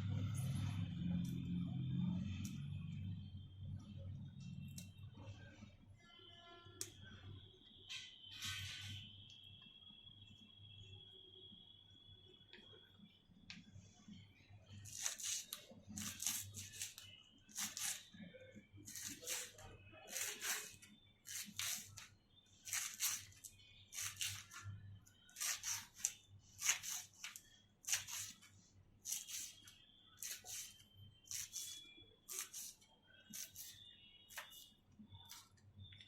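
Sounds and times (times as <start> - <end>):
bread tearing by hand: 14.8 - 18.1, 18.8 - 22.1, 22.7 - 24.7, 25.4 - 28.4, 29.0 - 29.6, 30.2 - 34.6.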